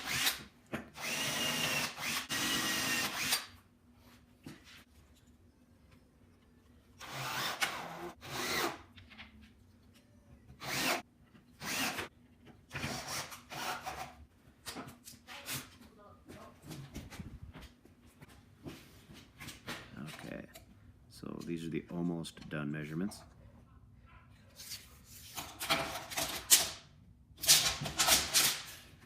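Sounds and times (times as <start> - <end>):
cordless drill motor whining: 1.0 - 3.4.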